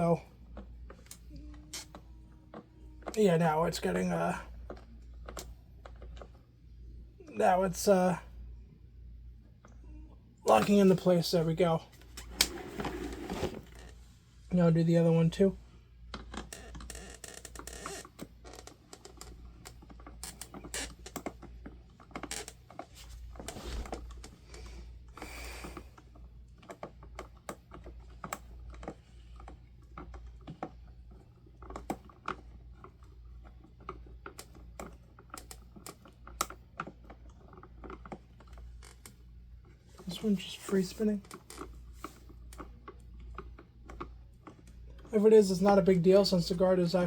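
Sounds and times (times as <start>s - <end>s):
plastic scraping rubs: 12.0s - 14.0s, 22.1s - 26.0s.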